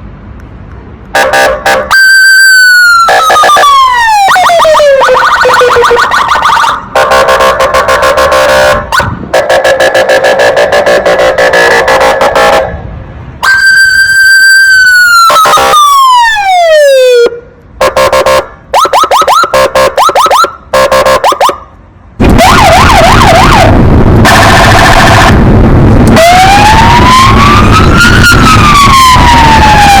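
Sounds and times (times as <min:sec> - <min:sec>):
police car siren: 0:01.2 - 0:12.8, 0:13.4 - 0:30.0.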